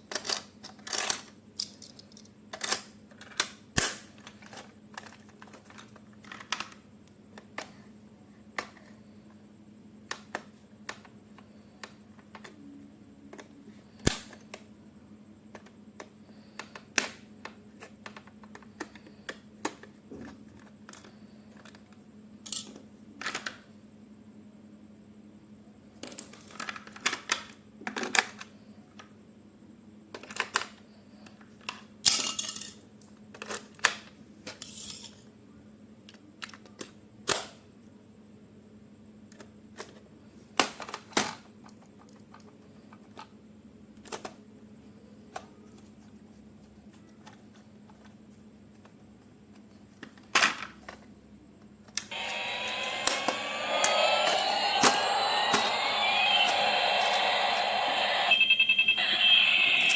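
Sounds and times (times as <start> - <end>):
plastic toys clicking and tapping: 0.1 - 6.8
faint steady hum: 52.1 - 59.9.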